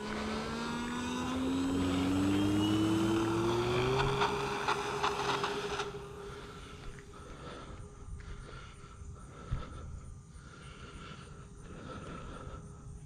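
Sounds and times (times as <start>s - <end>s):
electric motor and propeller whine: 0.0s - 8.1s.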